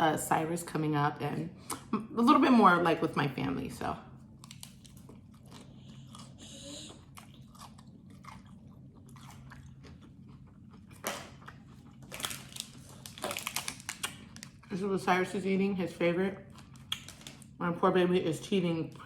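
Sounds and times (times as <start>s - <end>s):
steady low hum: 0.0s - 19.0s
chewing and crunching food: 4.2s - 14.9s, 16.3s - 17.6s.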